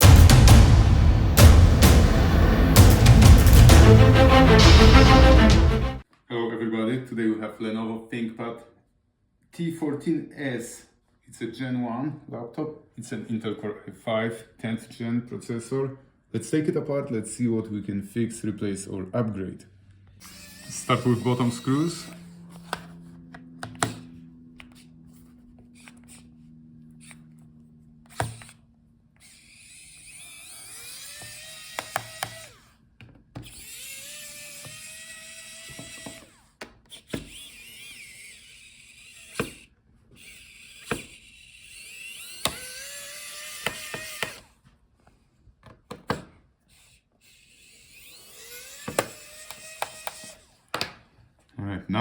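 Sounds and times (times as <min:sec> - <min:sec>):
electric screwdriver whine: 0:20.2 - 0:32.8, 0:33.4 - 0:44.6, 0:46.7 - 0:50.7.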